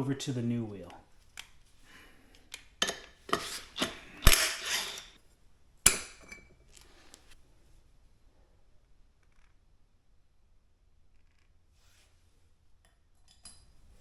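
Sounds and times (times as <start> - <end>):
metal tools clinking: 2.8 - 5.2.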